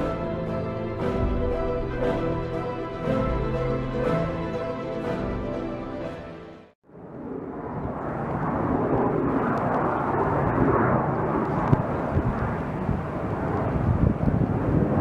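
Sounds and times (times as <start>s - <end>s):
jet engine roar: 6.9s - 15.0s
wind buffeting microphone: 7.0s - 15.0s.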